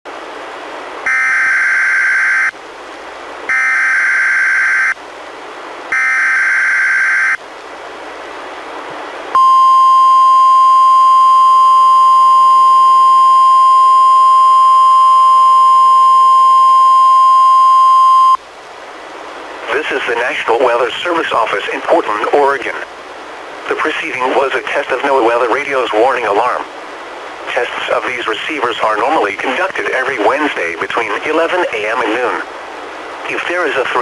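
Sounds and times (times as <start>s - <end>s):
steady alarm tone: 1.1s - 2.5s, 3.5s - 5.0s, 5.9s - 7.4s
radio hiss: 19.6s - 34.0s.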